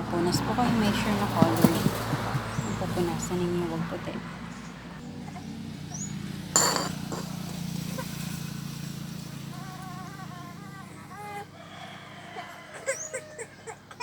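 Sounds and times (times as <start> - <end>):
sharp clink: 6.6 - 7.6
infant whimpering: 9.5 - 11.5.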